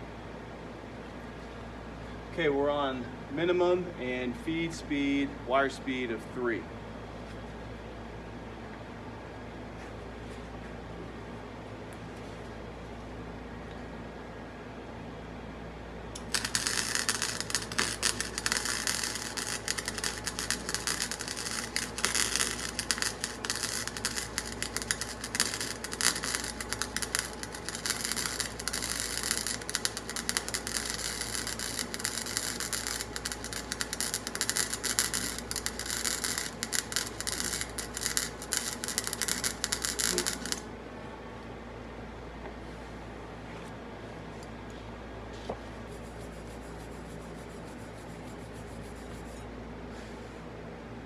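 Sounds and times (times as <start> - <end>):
welding arc crackling: 16.2 - 40.7.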